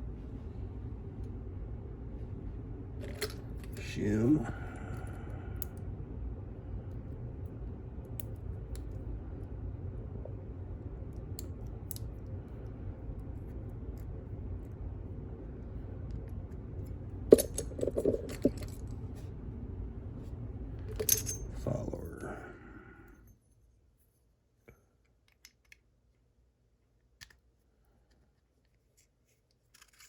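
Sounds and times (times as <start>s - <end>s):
steady low hum: 0.0s - 30.0s
metal lock parts clinking: 17.3s - 18.8s, 20.9s - 21.6s, 29.5s - 30.0s.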